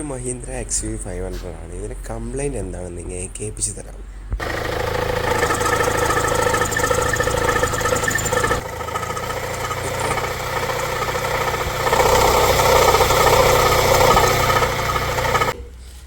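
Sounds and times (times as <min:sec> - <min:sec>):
engine idling with heavy knocking: 0:04.4 - 0:15.6.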